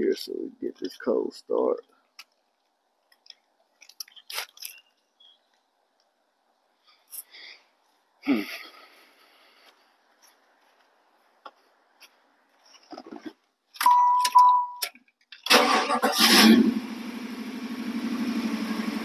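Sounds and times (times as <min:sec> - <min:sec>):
short electronic chimes: 0:13.8 - 0:14.8
car engine idling: 0:15.5 - 0:19.0.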